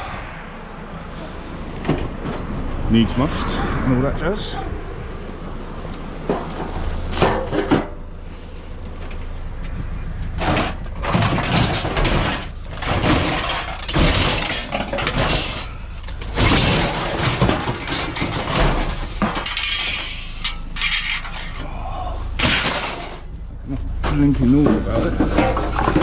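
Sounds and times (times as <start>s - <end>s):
scrap metal clattering and clinking: 6.2s - 8.1s, 10.2s - 21.7s, 22.3s - 26.0s.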